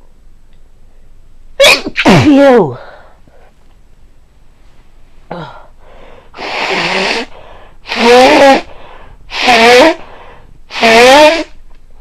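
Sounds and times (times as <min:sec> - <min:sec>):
person sneezing: 0:01.6 - 0:03.1, 0:06.4 - 0:11.6.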